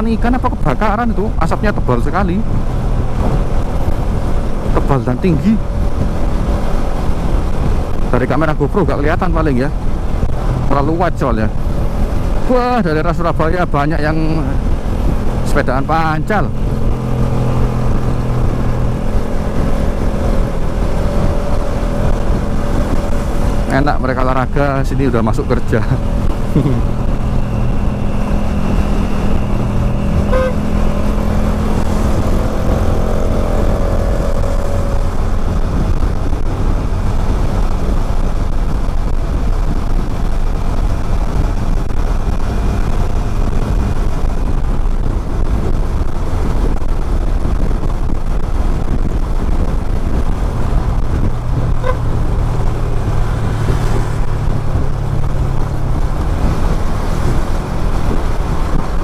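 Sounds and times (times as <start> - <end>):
road rumble: 0.0 - 59.0
wind rush: 0.0 - 59.0
motorcycle engine running: 14.4 - 59.0
horn toots: 29.5 - 31.2, 51.8 - 52.2.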